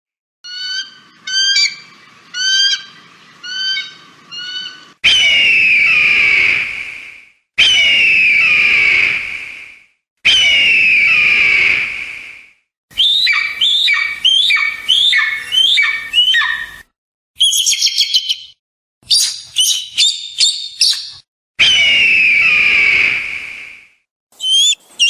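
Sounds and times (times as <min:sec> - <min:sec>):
eagle screaming: 0:00.4 - 0:06.7, 0:07.6 - 0:09.2, 0:10.3 - 0:11.9, 0:13.0 - 0:16.8, 0:21.6 - 0:23.2
eagle chittering: 0:00.5 - 0:06.2, 0:13.1 - 0:16.8.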